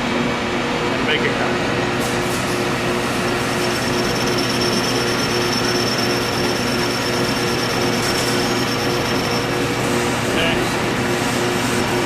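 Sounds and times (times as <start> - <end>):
metal lathe cutting: 3.3 - 10.4
thin high whine: 3.6 - 9.7.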